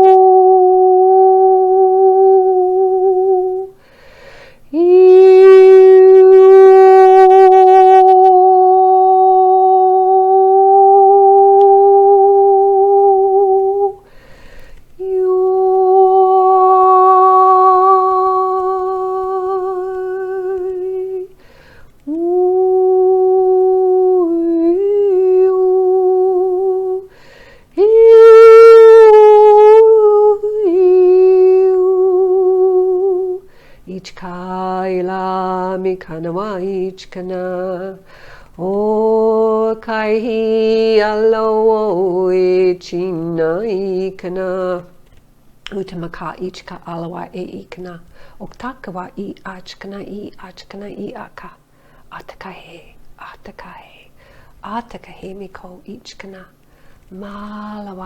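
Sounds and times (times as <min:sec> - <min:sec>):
woman toning long held notes: 0:00.0 - 0:04.0, 0:04.7 - 0:14.2, 0:15.0 - 0:44.8.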